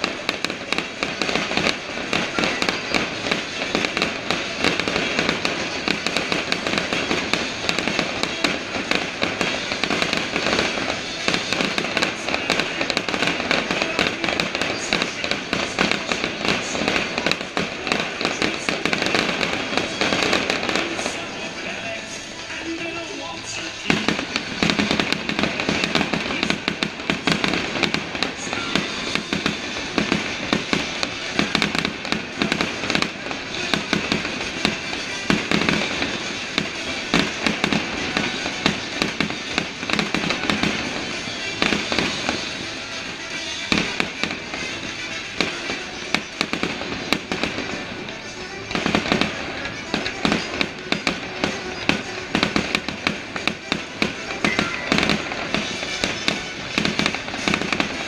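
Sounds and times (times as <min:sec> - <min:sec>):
fireworks crackling and popping: 0:00.0 - 0:58.0
music: 0:00.2 - 0:58.0.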